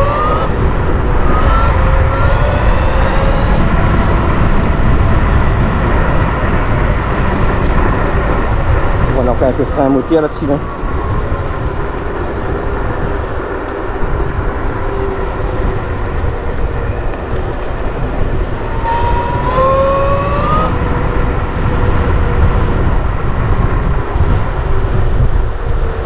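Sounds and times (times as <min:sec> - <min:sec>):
electric motor whine: 0:00.0 - 0:04.2, 0:14.6 - 0:20.9
wind and road noise: 0:00.0 - 0:26.0.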